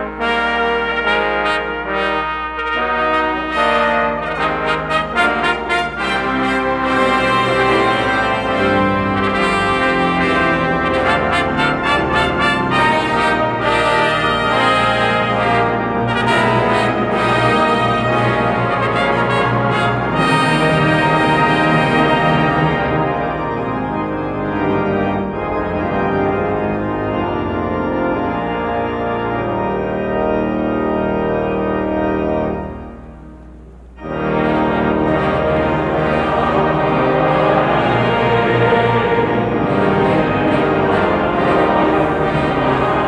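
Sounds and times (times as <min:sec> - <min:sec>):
brass ensemble playing: 0:00.0 - 0:43.0.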